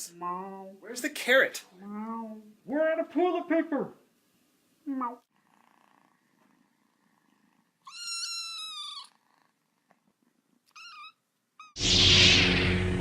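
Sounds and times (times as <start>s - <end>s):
faint cat purring: 5.0s - 7.8s, 8.7s - 11.0s
cat chirp: 7.8s - 9.2s, 10.7s - 11.8s
cat meowing: 7.8s - 9.2s, 10.7s - 11.8s.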